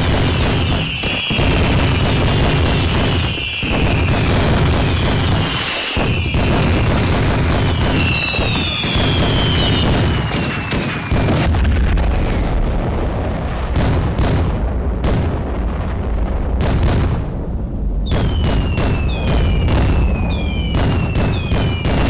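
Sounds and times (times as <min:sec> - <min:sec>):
whistling firework: 0:00.0 - 0:15.4, 0:18.0 - 0:22.0
fireworks barrage booming: 0:00.0 - 0:22.0
loud firework reports: 0:00.0 - 0:22.0.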